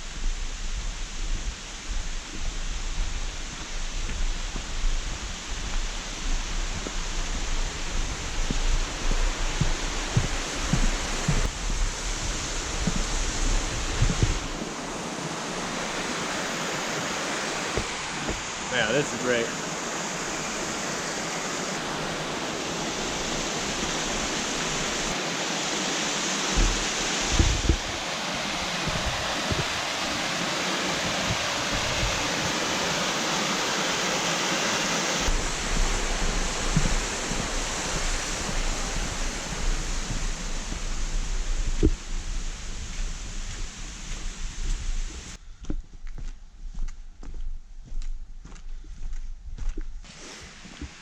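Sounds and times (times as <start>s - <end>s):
rushing outdoor noise: 0.0s - 45.4s
low thumps: 26.5s - 28.0s, 35.3s - 43.7s.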